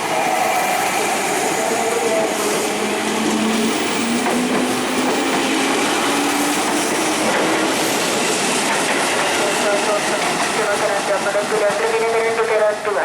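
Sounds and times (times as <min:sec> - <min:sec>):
train passing at speed: 0:00.0 - 0:13.0
wheels clattering on rail: 0:02.6 - 0:12.0.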